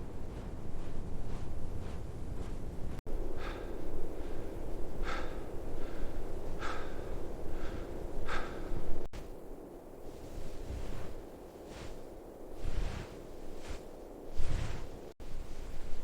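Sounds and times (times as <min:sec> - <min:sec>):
person breathing heavily: 0:03.1 - 0:09.1.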